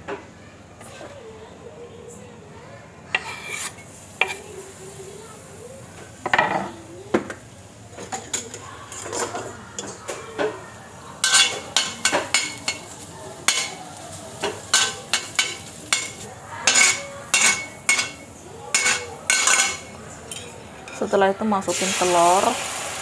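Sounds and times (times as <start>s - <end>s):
metal utensil scraping a pan: 3.2s - 4.5s, 11.2s - 21.1s.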